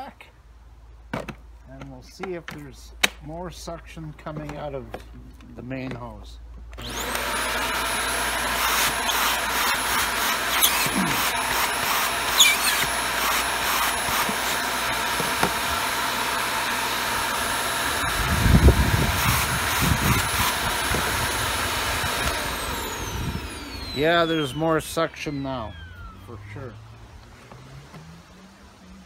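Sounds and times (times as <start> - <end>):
vacuum cleaner motor whine: 6.8 - 28.0.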